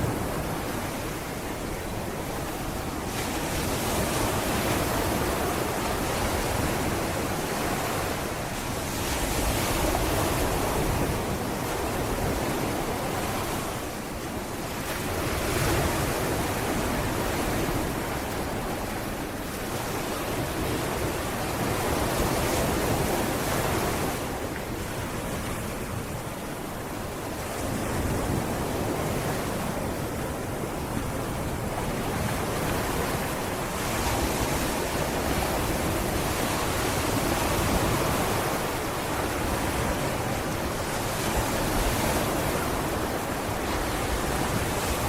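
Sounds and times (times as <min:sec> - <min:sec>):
sea waves breaking on beach: 0:00.0 - 0:45.0
wind on microphone: 0:00.0 - 0:45.0.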